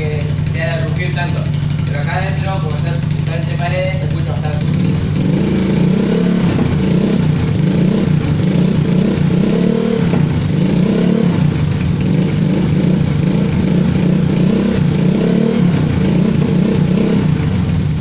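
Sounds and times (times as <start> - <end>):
motorcycle engine idling: 0.0 - 18.0.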